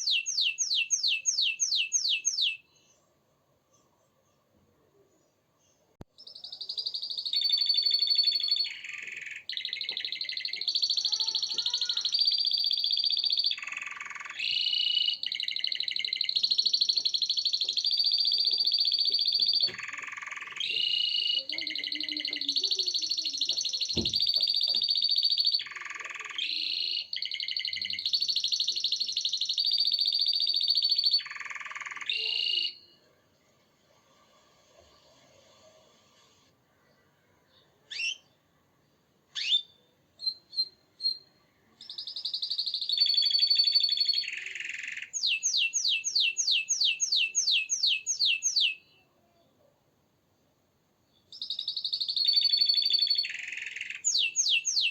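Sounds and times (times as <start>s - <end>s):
canary singing trills: 0.0s - 2.7s, 6.2s - 33.0s, 39.4s - 49.1s, 51.2s - 54.9s.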